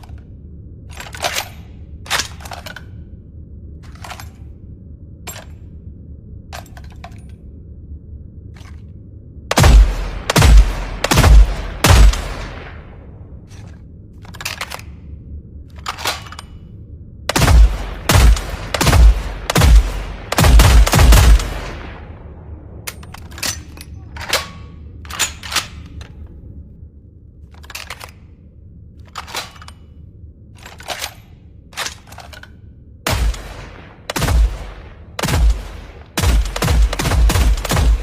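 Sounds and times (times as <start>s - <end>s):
low steady hum: 0.0s - 38.0s
rifle shots booming: 9.5s - 13.2s, 17.3s - 22.8s, 33.1s - 38.0s.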